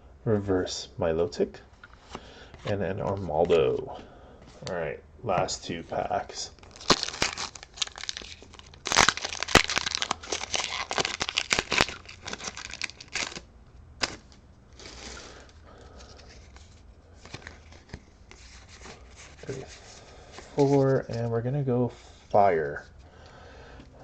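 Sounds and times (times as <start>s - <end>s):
foil wrapper crinkling and tearing: 6.6s - 18.0s
soft rustling: 14.1s - 21.3s.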